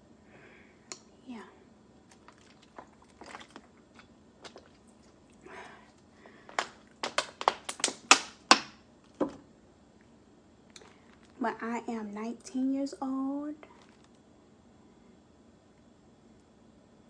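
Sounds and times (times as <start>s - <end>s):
chewing smacks: 2.1s - 5.4s.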